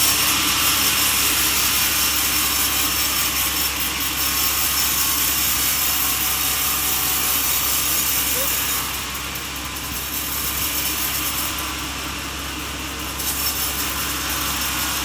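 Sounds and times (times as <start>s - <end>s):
saw cutting through log: 0.0s - 15.0s.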